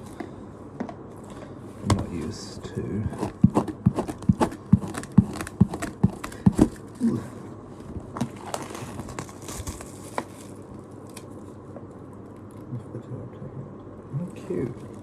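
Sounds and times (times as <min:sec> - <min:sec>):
sharp taps and knocks on box: 0:03.2 - 0:06.8.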